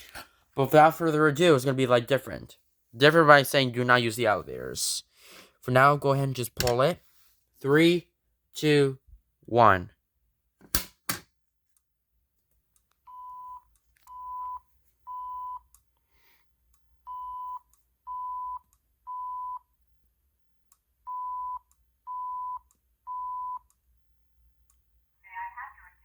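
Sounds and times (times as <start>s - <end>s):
pull station clicks: 6.6s - 6.9s
fire alarm beeps: 13.1s - 15.7s, 17.1s - 19.7s, 21.1s - 23.7s.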